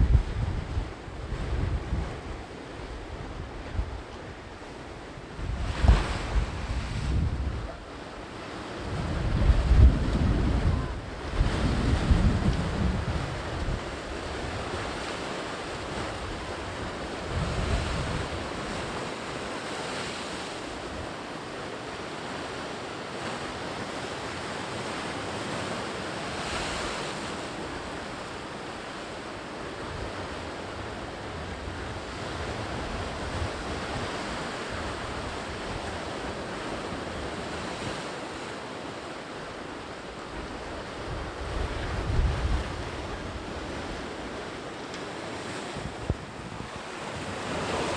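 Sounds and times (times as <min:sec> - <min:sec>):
wind buffeting microphone: 0:00.0 - 0:07.9, 0:08.8 - 0:14.9, 0:17.3 - 0:18.8, 0:40.4 - 0:44.2, 0:45.4 - 0:47.9
sea waves breaking on shore: 0:00.0 - 0:47.9.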